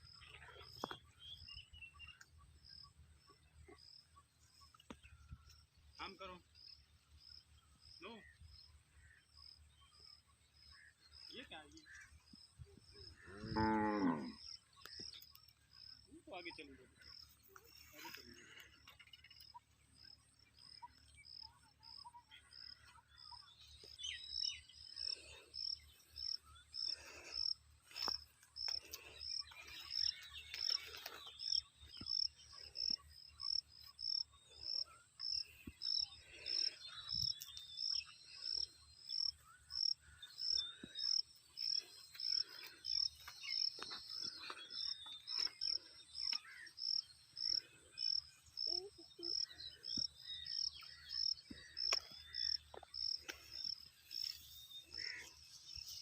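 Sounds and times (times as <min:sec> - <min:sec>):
bird chirps: 0:00.0 - 0:56.0
insect chirping: 0:23.8 - 0:56.0.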